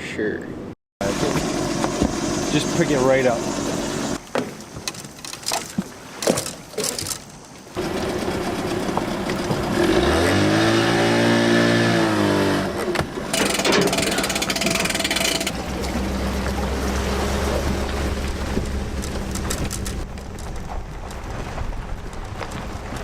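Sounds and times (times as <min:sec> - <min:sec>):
boat motor revving: 0:07.8 - 0:20.4
knocks and clicks: 0:12.9 - 0:15.6
rushing wind and water: 0:15.5 - 0:23.0.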